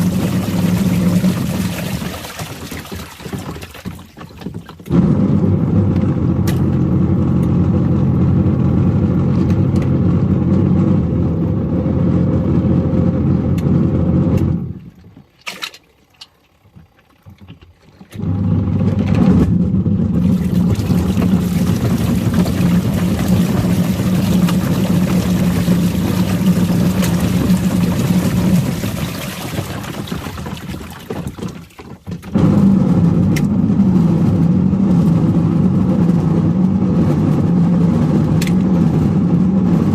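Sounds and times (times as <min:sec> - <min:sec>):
plastic pieces churning in water: 0:00.0 - 0:05.7, 0:14.6 - 0:33.5
washing machine motor humming: 0:00.0 - 0:39.9.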